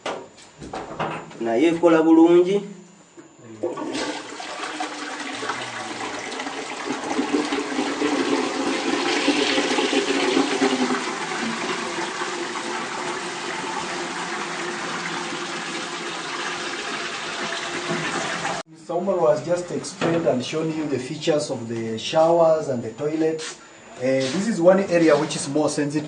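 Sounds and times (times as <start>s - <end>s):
toilet tank refilling: 3.6s - 18.6s
toilet flushing: 3.6s - 18.7s.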